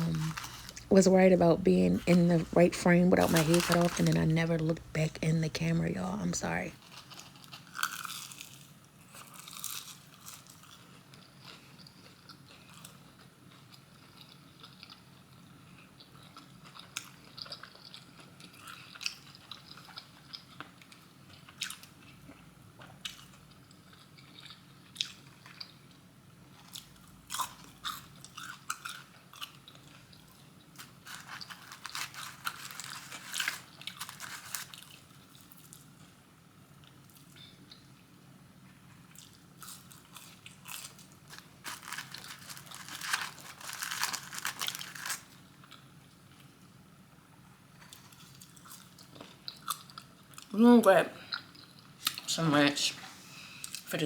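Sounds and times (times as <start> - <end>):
crunching of fried food: 0.0 - 0.9, 3.2 - 4.9, 6.7 - 36.1, 38.9 - 46.6, 47.8 - 50.6
chewing: 6.8 - 35.9.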